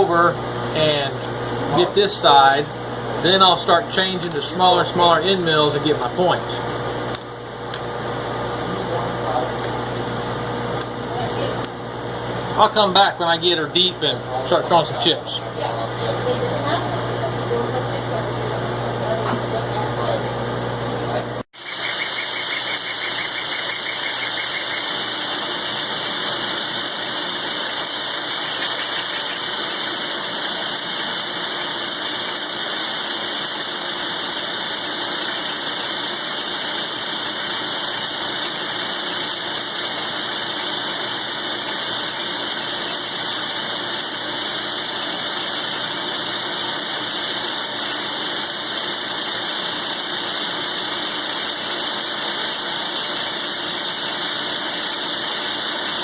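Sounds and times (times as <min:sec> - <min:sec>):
milling machine cutting steel: 0:21.6 - 0:56.0.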